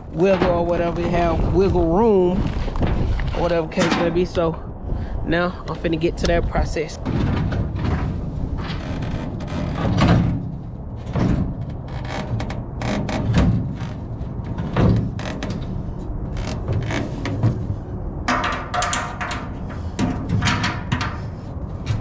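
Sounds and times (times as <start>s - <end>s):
tank knocks and thuds: 7.0s - 8.8s, 9.4s - 15.6s.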